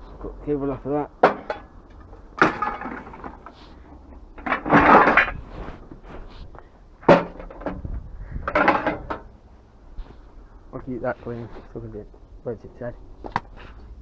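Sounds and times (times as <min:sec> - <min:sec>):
scrap metal rattling clatter: 0:00.2 - 0:10.3.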